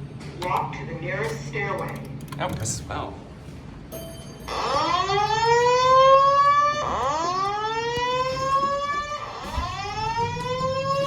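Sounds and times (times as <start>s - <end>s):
rising whoop fire alarm tone: 4.5s - 11.0s.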